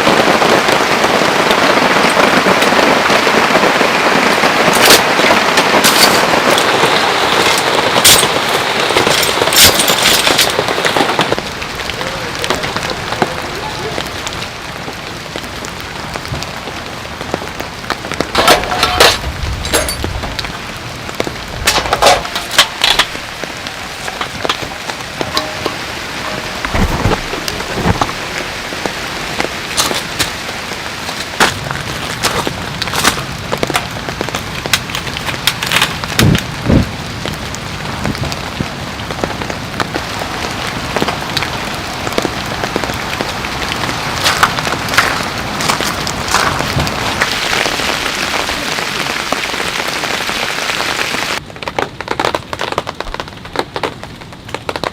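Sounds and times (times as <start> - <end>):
heavy rain hissing: 0.0 - 51.5
sharp raindrop hits: 0.0 - 54.9
low rumble: 19.2 - 29.7.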